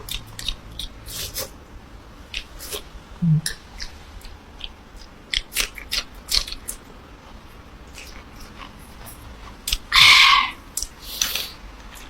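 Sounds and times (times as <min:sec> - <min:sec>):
mouth clicks: 0:00.0 - 0:01.5, 0:02.3 - 0:06.8
crunchy chewing: 0:03.5 - 0:12.0.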